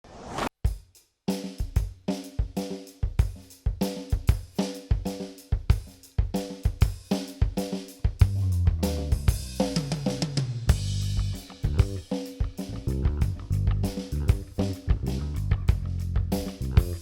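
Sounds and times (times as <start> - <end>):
drum kit beat: 0.7 - 17.0
bass line: 8.2 - 9.5, 10.7 - 12.1, 12.7 - 17.0.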